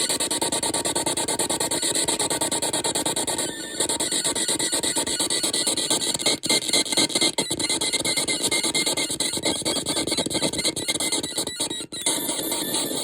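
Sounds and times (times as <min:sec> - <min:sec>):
harsh stuttering electronic noise: 0:01.7 - 0:06.6, 0:07.5 - 0:13.0.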